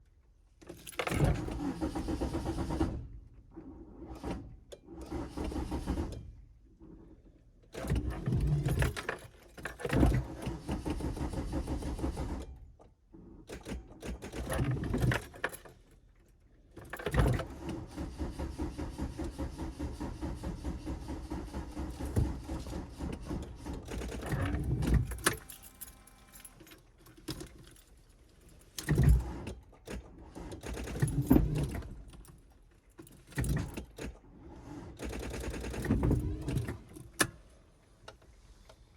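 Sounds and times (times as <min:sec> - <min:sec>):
starter motor cranking engine: 0:01.4 - 0:03.1, 0:05.0 - 0:06.2, 0:10.2 - 0:12.5, 0:17.4 - 0:25.4, 0:34.9 - 0:36.8.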